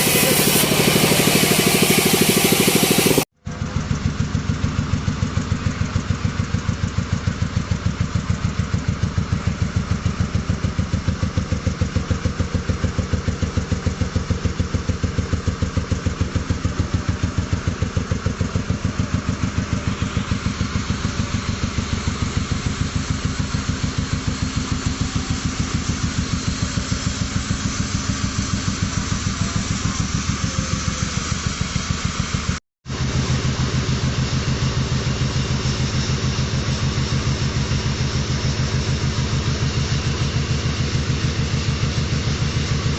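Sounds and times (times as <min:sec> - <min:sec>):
loud hiss: 0:00.0 - 0:03.3
sawmill engine pulsing hum: 0:00.0 - 0:42.9.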